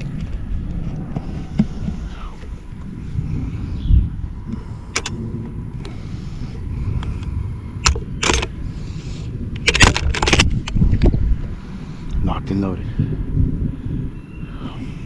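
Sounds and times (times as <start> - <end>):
low rumble: 0.0 - 12.3
short metallic clatter: 5.0 - 5.2, 7.8 - 8.5, 9.6 - 10.6
shotgun metallic clicks: 5.0 - 5.2, 7.8 - 8.5, 9.6 - 10.8.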